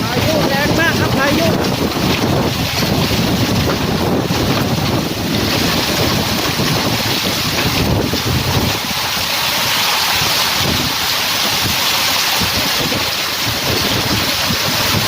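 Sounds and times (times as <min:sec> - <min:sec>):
strong wind buffeting microphone: 0:00.0 - 0:15.0.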